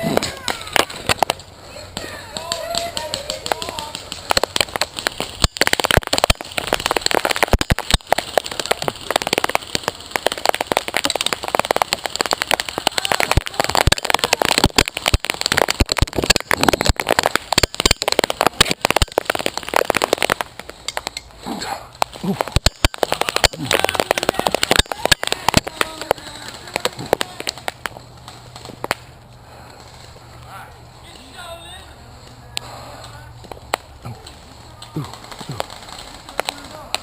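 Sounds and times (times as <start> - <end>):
airsoft guns firing rapidly: 2.0 - 20.4, 22.2 - 27.8
bbs striking body armor: 22.0 - 29.0.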